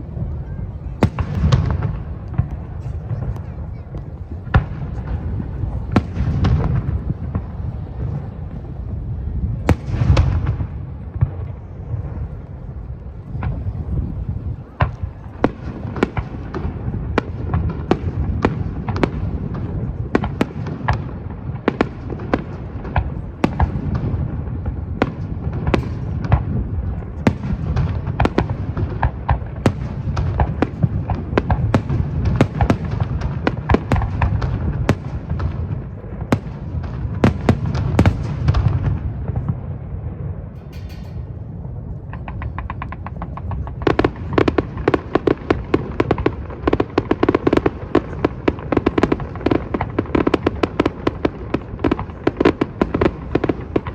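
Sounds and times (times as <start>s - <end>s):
fireworks bangs: 0.0s - 53.9s
low rumble: 39.0s - 44.4s.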